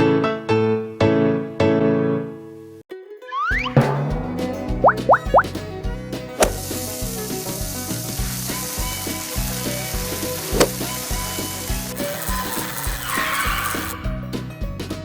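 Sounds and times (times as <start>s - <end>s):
children's music with steady beat: 3.4s - 11.9s
sizzling hiss: 6.4s - 14.0s.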